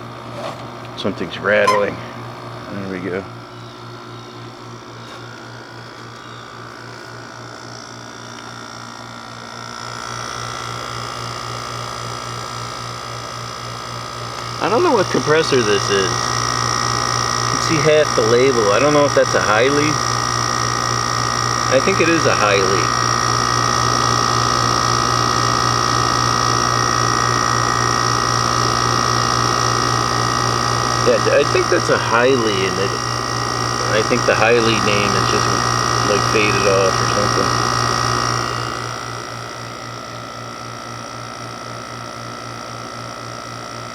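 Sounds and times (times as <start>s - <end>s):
air conditioner compressor hum: 0.0s - 43.9s
high whining tones: 1.6s - 2.2s
steady high whine: 1.6s - 2.4s, 14.5s - 39.6s
fan noise: 9.7s - 40.2s.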